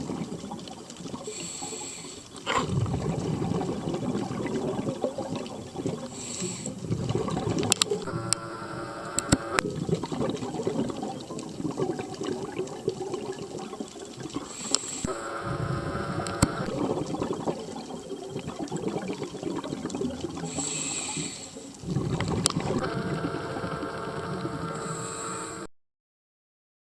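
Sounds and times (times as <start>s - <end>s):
exhaled air bubbling: 0.0s - 25.6s
regulator inhalation hiss: 1.3s - 2.4s, 6.1s - 6.8s, 14.5s - 16.8s, 20.5s - 21.8s, 22.8s - 25.7s.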